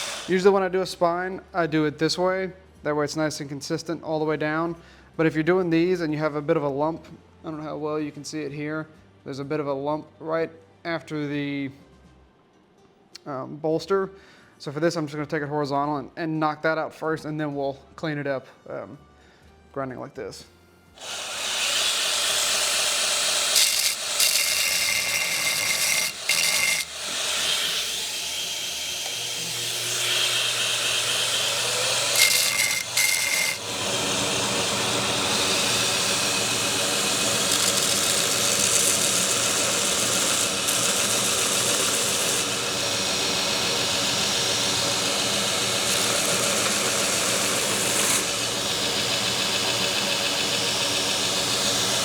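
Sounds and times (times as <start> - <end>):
belt grinder rasping steel: 0.0 - 0.4, 21.0 - 52.0
motor hum: 42.6 - 52.0.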